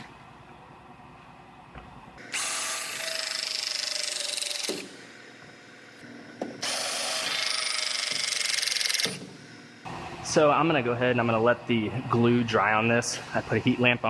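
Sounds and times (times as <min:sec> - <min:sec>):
power tool motor fluttering: 0:02.2 - 0:05.2, 0:06.6 - 0:09.4.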